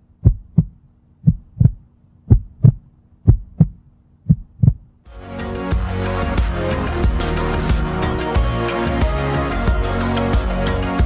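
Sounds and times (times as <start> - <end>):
heartbeat thumps: 0.2 - 4.9
music with a beat: 5.1 - 11.0.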